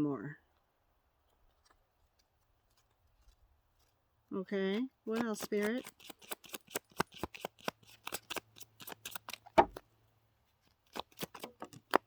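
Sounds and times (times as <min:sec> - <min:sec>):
cards being shuffled: 0:05.1 - 0:09.8, 0:10.9 - 0:12.0
knock: 0:09.6 - 0:09.8.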